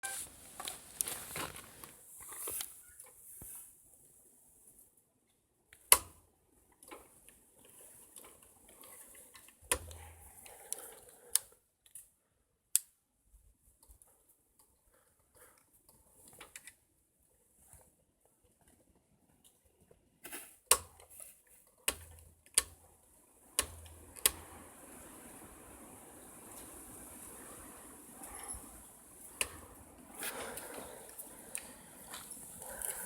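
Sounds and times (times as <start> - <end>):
faint rustling and hiss: 0.1 - 5.5, 24.3 - 33.0.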